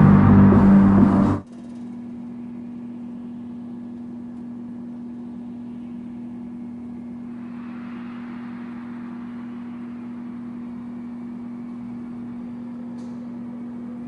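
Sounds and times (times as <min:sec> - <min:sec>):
machine hum: 0:00.0 - 0:01.5.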